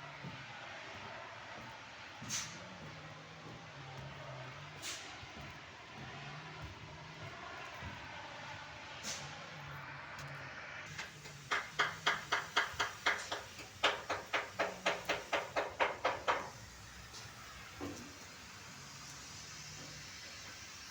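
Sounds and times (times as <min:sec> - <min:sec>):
sharp evenly spaced knocks: 0:10.9 - 0:16.6.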